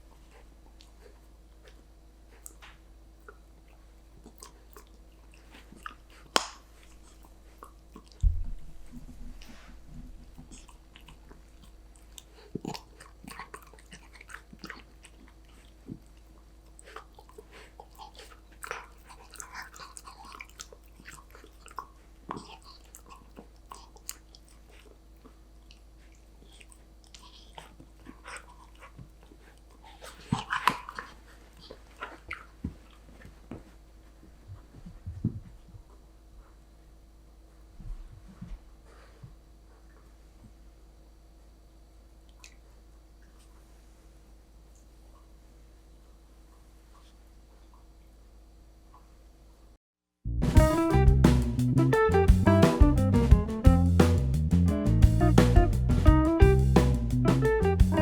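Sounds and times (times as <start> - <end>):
puppy chewing a treat: 0.1 - 8.4, 9.0 - 33.7.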